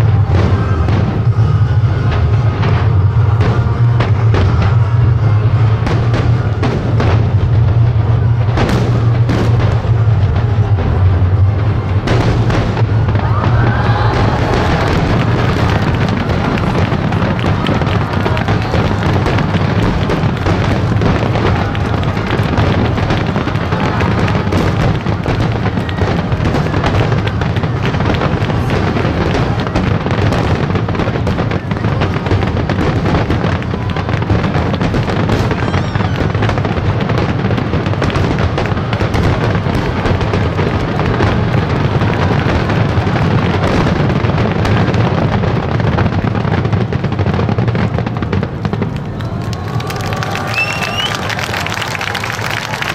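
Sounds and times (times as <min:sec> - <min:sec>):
low rumble: 0:00.0 - 0:30.4
fireworks bursting and crackling: 0:00.0 - 0:52.9.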